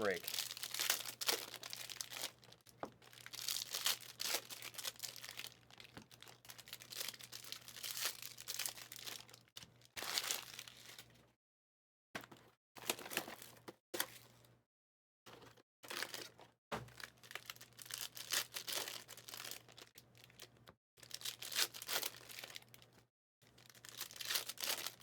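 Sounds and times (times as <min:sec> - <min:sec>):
plastic wrapping crinkling: 0:00.0 - 0:09.4, 0:17.0 - 0:22.9, 0:23.6 - 0:25.0.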